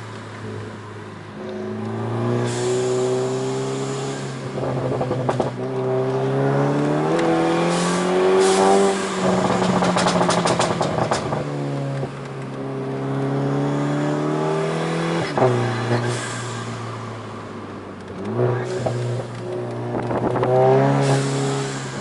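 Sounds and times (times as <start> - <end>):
car engine revving under load: 0.4 - 22.0
exhaust pops and crackles: 9.2 - 12.6, 18.0 - 20.6.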